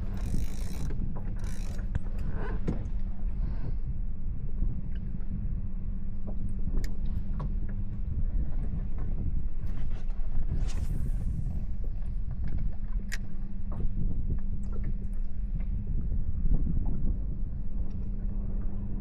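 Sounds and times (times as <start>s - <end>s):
fishing reel ratcheting: 0.0s - 1.9s
steady low rumble: 0.0s - 19.0s.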